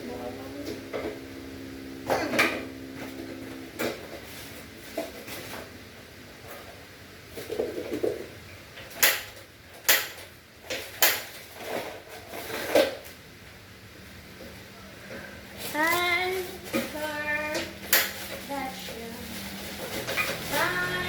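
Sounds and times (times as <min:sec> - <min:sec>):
objects knocking and clattering: 0:07.4 - 0:13.0.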